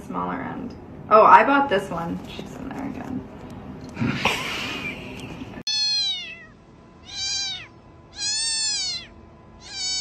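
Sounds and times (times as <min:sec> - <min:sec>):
cat meowing: 0:05.7 - 0:10.0.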